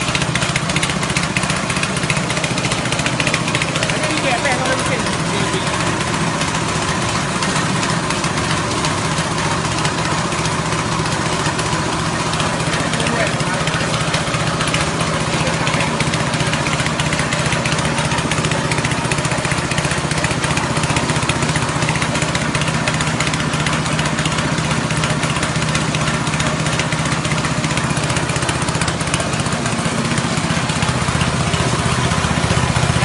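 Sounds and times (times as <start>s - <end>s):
small petrol engine running: 0.0s - 33.0s.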